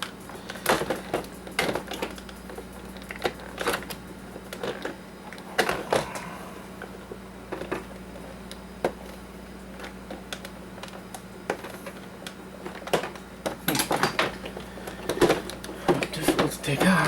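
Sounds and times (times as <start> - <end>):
low hum: 5.0 - 9.8.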